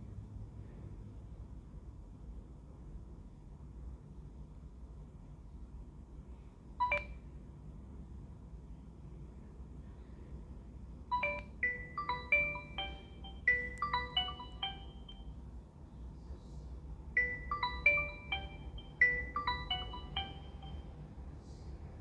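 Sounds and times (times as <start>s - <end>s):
phone ringtone melody: 6.8s - 7.1s, 11.1s - 15.3s, 17.2s - 21.0s.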